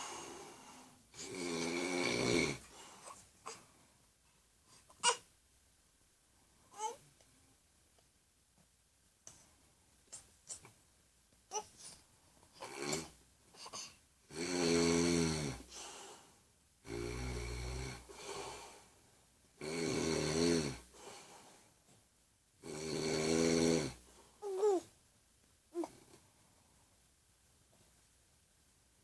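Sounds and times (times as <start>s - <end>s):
man snoring heavily: 1.2s - 2.6s, 12.6s - 13.1s, 14.3s - 15.7s, 16.8s - 18.5s, 19.6s - 20.9s, 22.6s - 24.0s.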